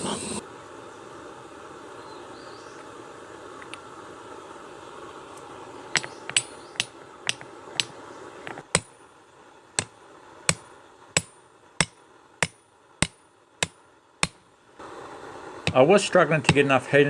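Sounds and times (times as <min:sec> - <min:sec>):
steady background noise: 0:00.0 - 0:17.0
hammer striking steel on anvil: 0:06.0 - 0:08.0, 0:08.7 - 0:09.0, 0:10.5 - 0:14.4.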